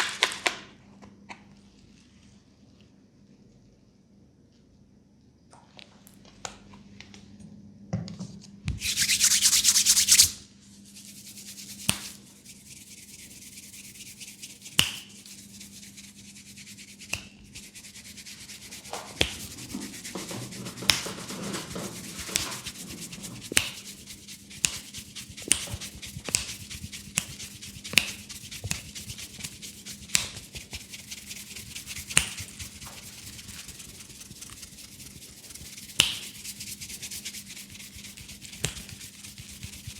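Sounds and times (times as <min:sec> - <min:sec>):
hands rubbing hair and scalp: 0:08.8 - 0:39.9
sharp snaps: 0:14.7 - 0:15.3, 0:17.1 - 0:17.6, 0:24.6 - 0:30.7, 0:32.0 - 0:34.6.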